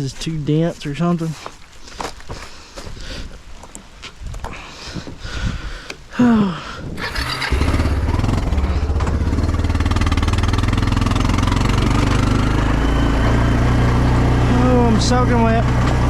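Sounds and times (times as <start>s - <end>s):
engine starting and idling: 7.0s - 13.5s.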